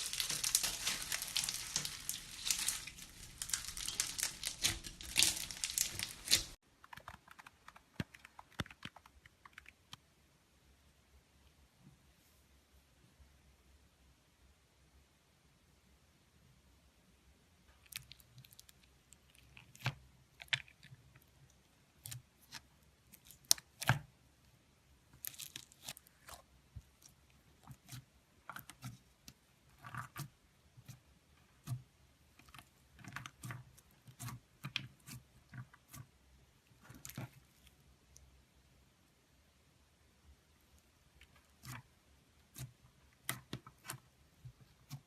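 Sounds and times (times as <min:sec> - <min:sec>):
slime squeezed by hand: 0:00.0 - 0:06.6.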